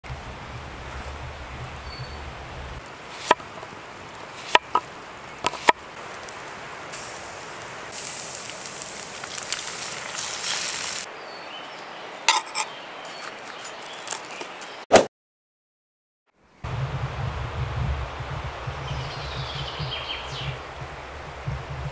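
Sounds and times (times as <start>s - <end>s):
steady hiss: 0.1s - 11.1s.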